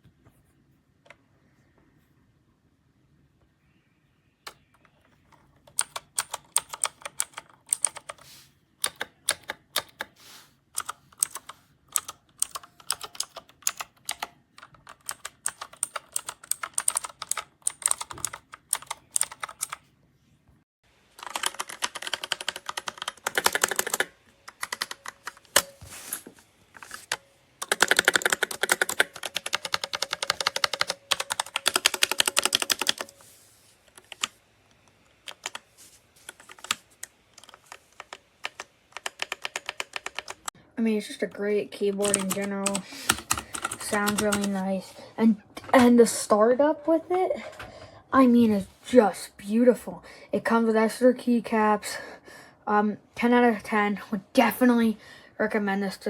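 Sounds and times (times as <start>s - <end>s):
mechanical keyboard typing: 5.6s - 10.2s, 10.8s - 19.8s, 21.2s - 25.7s, 26.8s - 33.2s, 33.9s - 34.4s, 35.0s - 40.6s, 41.8s - 44.7s.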